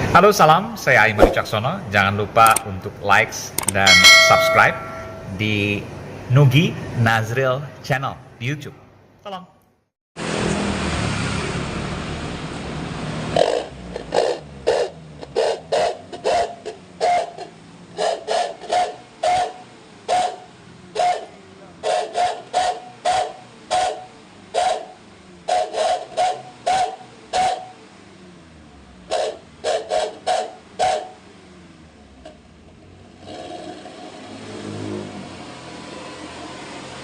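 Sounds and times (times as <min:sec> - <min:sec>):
metal-on-metal strikes ringing: 0:03.8 - 0:05.6.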